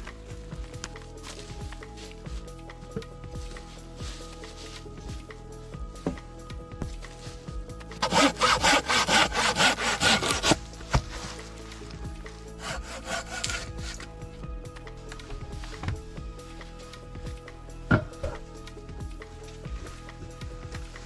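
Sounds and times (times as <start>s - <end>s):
hand saw cutting wood: 8.0s - 11.2s, 12.6s - 14.1s.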